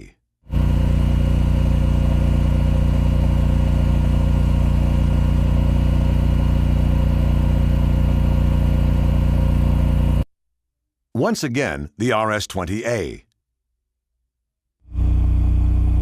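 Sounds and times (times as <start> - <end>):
generator engine running: 0.0 - 10.2, 14.9 - 16.0.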